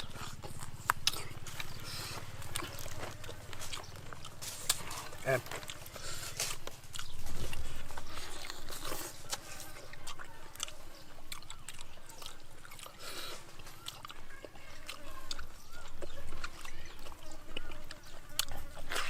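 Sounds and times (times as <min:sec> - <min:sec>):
person chewing crunchy food: 0:00.0 - 0:19.0.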